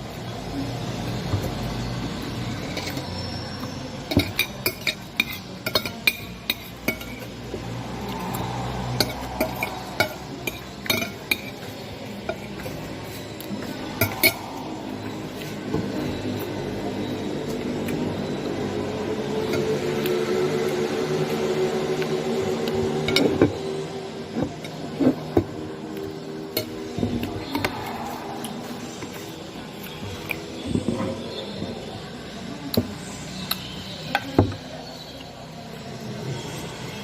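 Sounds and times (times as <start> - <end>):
utensils clinking against a dish: 1.2 - 18.2, 21.9 - 23.6.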